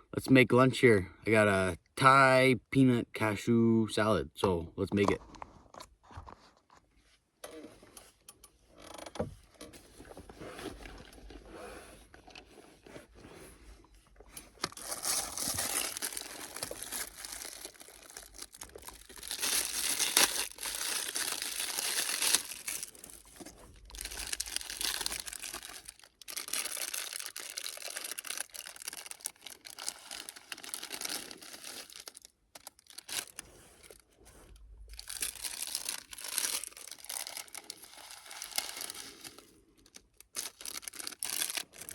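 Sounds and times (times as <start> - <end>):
plastic packaging crinkling and tearing: 14.6 - 41.9.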